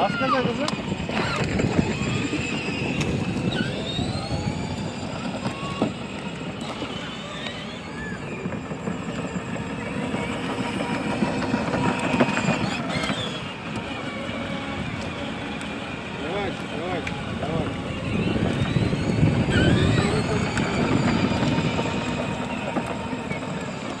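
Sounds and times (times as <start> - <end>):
vehicle driving under throttle: 0.4 - 24.0.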